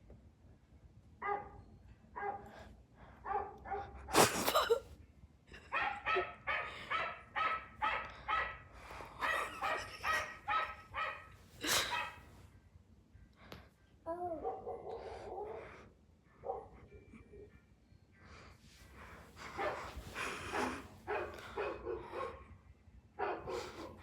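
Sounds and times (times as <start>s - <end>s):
dog barking sharply: 5.7s - 8.6s, 9.2s - 12.2s.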